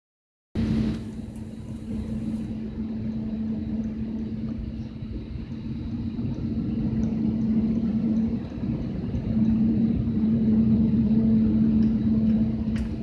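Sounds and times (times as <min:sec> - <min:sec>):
airplane engine rumble: 0:00.6 - 0:13.0.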